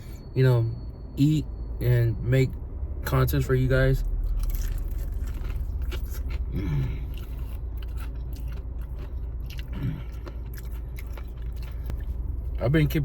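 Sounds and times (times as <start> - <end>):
person chewing crunchy food: 4.1 - 12.5.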